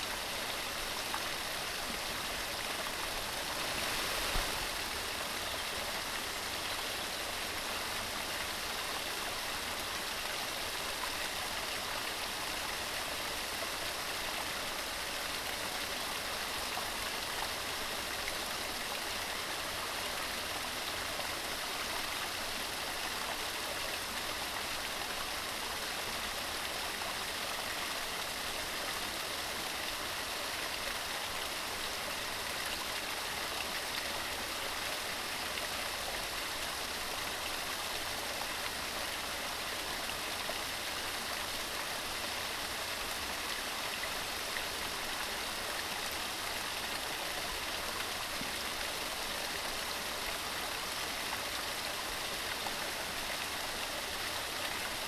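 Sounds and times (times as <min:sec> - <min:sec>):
mountain stream rushing: 0:00.9 - 0:05.3.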